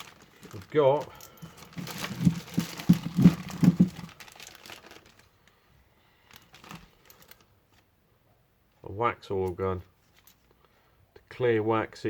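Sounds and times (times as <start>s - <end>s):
packaging crinkling and rustling: 0.0s - 5.6s, 6.2s - 7.9s.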